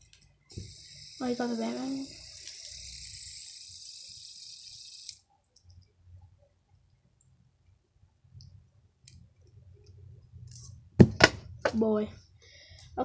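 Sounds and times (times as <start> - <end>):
fidget spinners clicking: 0.0 - 5.7
steady hiss: 0.5 - 5.2
click: 5.1 - 5.9.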